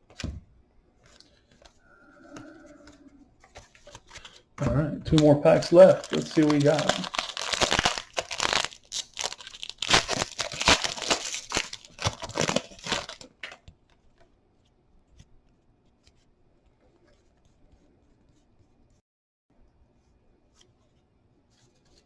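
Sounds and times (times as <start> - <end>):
cards being handled: 1.0 - 14.3
wrapper tearing and crinkling: 5.1 - 13.4.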